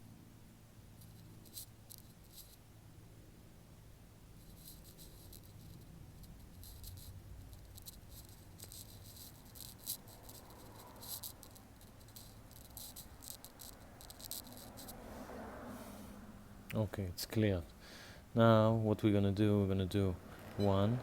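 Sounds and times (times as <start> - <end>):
low steady hum: 0.0 - 21.0
high-pitched chirping ticks: 4.7 - 15.0.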